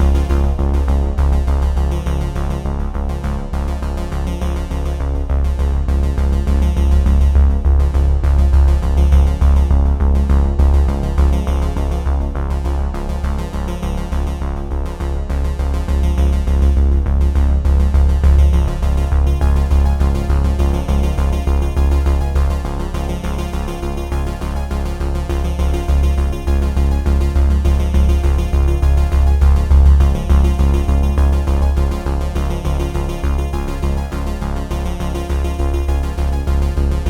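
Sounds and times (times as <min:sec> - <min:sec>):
electronic music with synthesizer: 0:00.0 - 0:07.2, 0:15.4 - 0:37.0
steady bass beat: 0:00.0 - 0:37.0.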